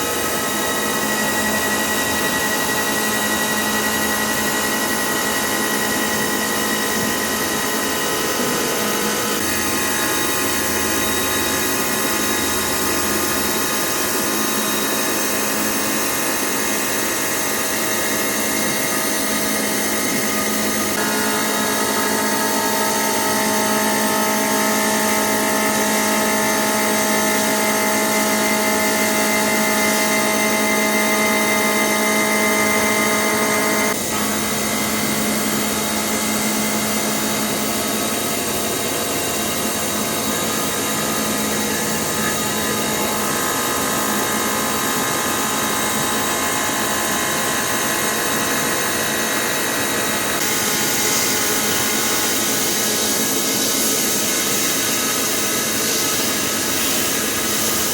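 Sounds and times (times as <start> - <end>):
milling machine cutting steel: 0.0 - 57.9.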